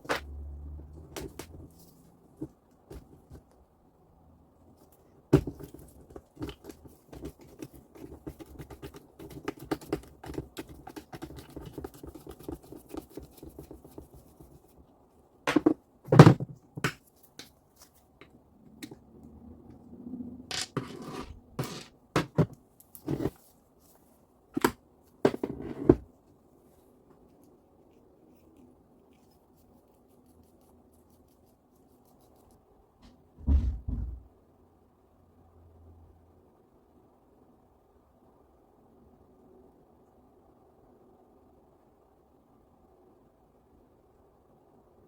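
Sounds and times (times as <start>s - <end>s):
scratching and scraping saw parts: 20.5s - 23.4s.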